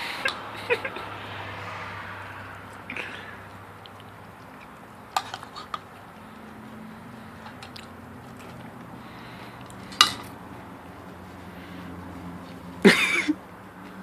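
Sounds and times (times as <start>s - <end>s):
dog crunching dry cereal: 3.8s - 10.3s.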